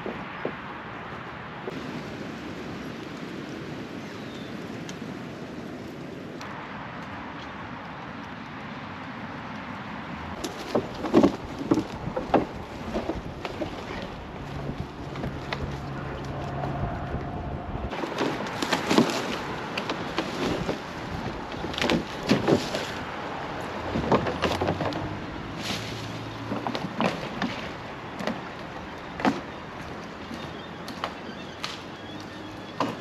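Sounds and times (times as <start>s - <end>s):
paddle splashing water: 10.2s - 16.7s, 17.9s - 33.0s.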